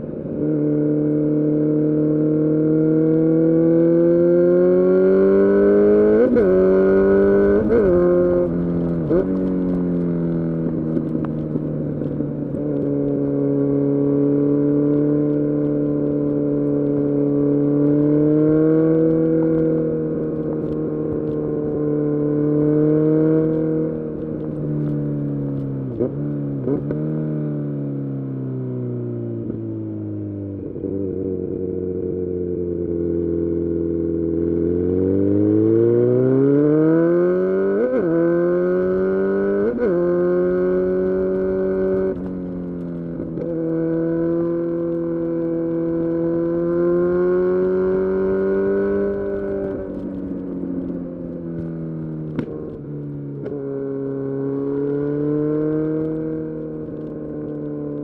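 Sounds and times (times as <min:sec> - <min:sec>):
motorcycle engine accelerating: 0:00.0 - 0:58.0.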